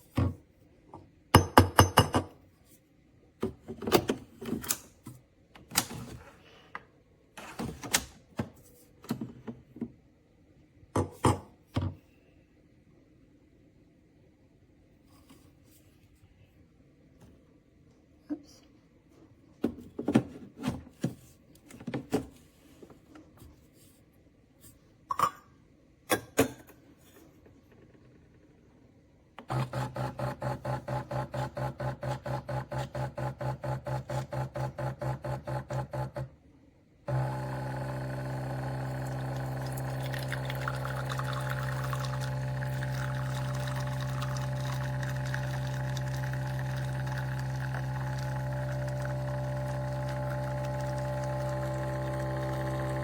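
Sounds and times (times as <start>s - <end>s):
espresso machine pump: 37.1s - 53.0s.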